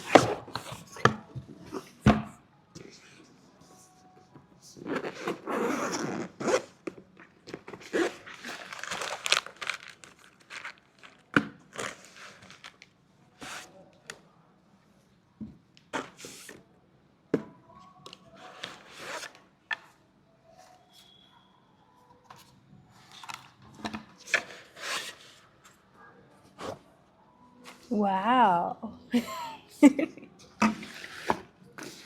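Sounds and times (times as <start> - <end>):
packaging tearing and rustling: 7.5 - 12.9.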